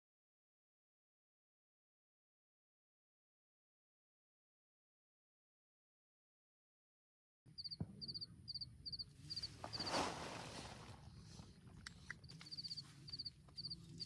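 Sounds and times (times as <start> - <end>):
cricket chirping: 7.6 - 10.2, 12.1 - 14.0.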